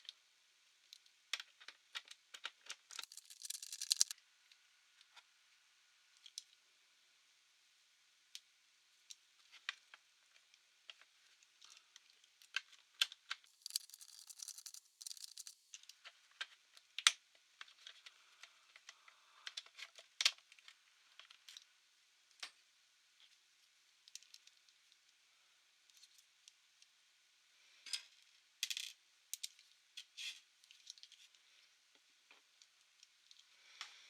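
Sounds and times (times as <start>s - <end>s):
small parts clicking and tapping: 0.9s - 4.2s, 9.1s - 21.7s, 24.0s - 25.1s, 27.9s - 31.4s.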